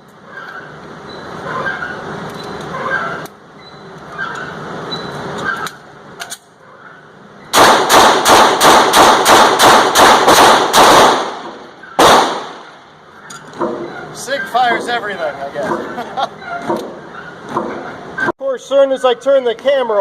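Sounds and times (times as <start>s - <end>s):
pistol shots: 7.5s - 12.8s.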